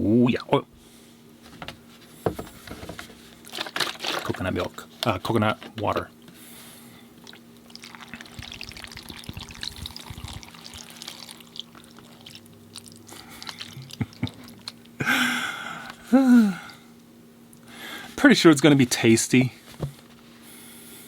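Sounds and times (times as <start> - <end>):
liquid pouring over fruit: 7.2 - 14.8
breathy vocal sound: 15.0 - 16.8.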